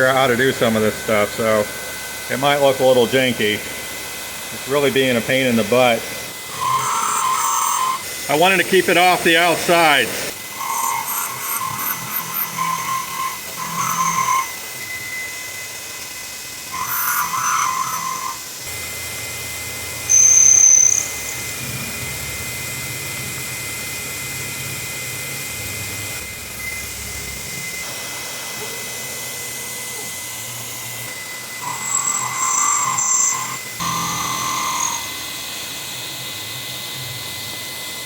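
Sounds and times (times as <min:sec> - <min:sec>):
tool cutting metal: 0:00.0 - 0:19.0, 0:20.0 - 0:22.4, 0:26.2 - 0:38.0
milling machine spindle whine: 0:00.0 - 0:38.0
high squeal: 0:06.5 - 0:08.0, 0:10.5 - 0:15.7, 0:16.7 - 0:18.5, 0:20.1 - 0:21.5, 0:31.6 - 0:35.4.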